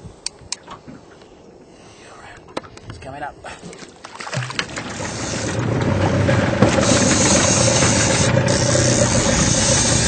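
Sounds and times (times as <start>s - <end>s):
constant hiss: 0.0s - 4.1s
boat engine running: 4.3s - 10.0s.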